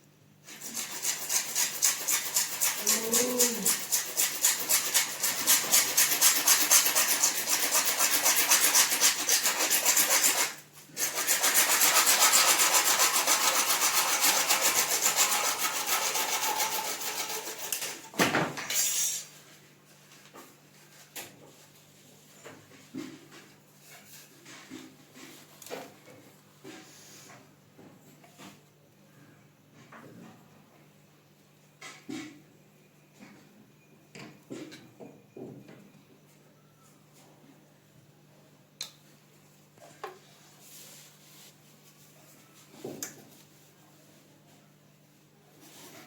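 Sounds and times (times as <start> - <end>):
hand tool rasping plastic pipe: 0.5 - 18.1.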